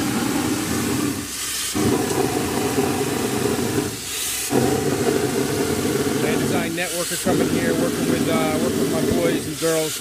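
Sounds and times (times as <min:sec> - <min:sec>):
engine drone: 0:00.0 - 0:09.4
rushing air hiss: 0:00.0 - 0:10.0.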